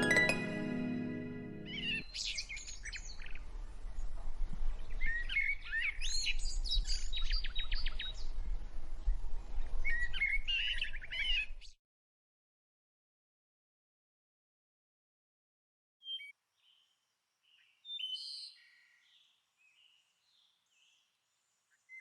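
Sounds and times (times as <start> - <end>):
harp music: 0.0 - 2.0.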